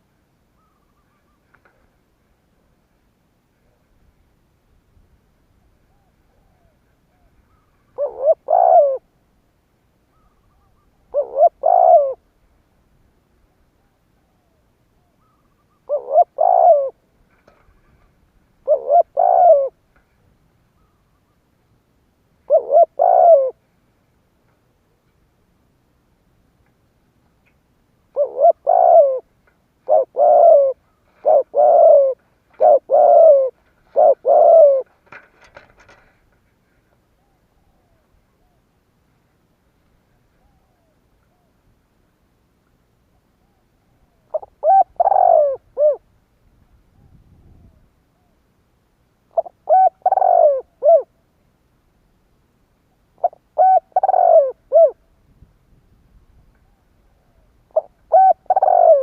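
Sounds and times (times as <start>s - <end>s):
dove cooing: 5.6s - 9.2s, 10.1s - 12.3s, 13.8s - 19.8s, 22.4s - 23.6s, 28.1s - 36.1s, 40.1s - 41.6s, 43.4s - 46.1s, 49.3s - 51.2s, 53.2s - 55.1s, 56.6s - 59.0s.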